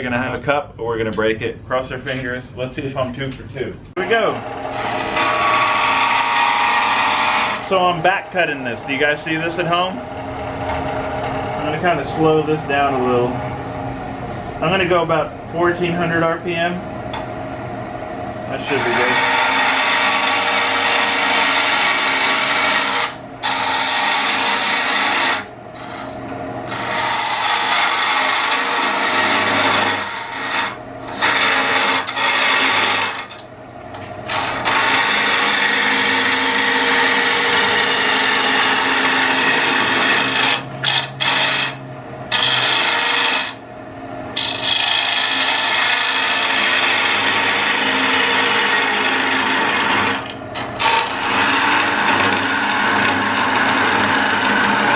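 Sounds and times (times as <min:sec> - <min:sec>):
lathe tool cutting wood: 0:04.2 - 0:11.6, 0:18.6 - 0:33.4, 0:34.3 - 0:43.6, 0:44.4 - 0:54.9.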